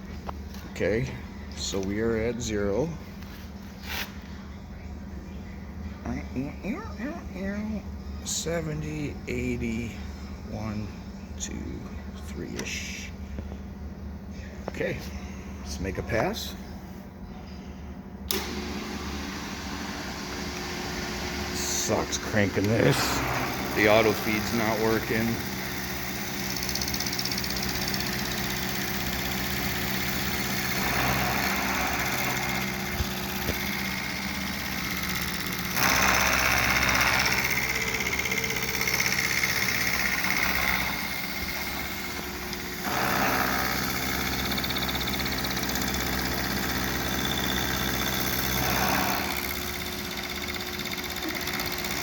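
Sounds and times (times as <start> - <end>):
face mill cutting plastic: 18.3 - 52.0
milling machine motor hum: 18.3 - 52.0.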